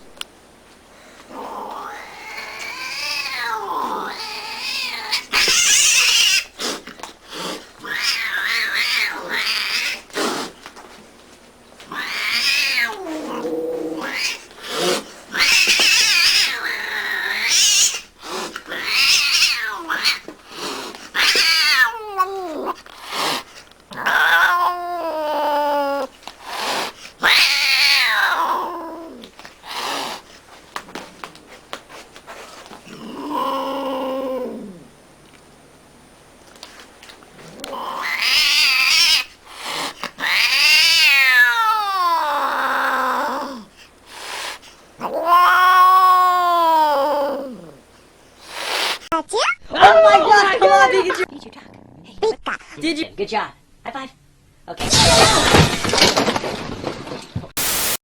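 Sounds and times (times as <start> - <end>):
cats meowing and yowling: 1.3 - 6.5, 7.8 - 10.2, 11.9 - 20.4, 21.2 - 22.9, 23.9 - 26.2, 27.2 - 29.9, 37.4 - 39.3, 40.0 - 43.7, 45.0 - 47.8.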